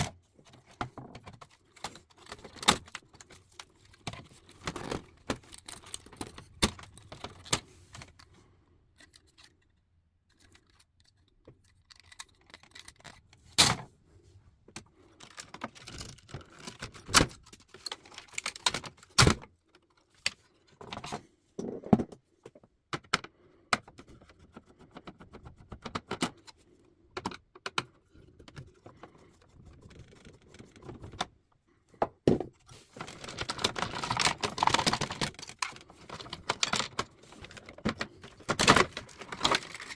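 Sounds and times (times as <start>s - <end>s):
typewriter parts clinking and clattering: 33.0s - 39.9s.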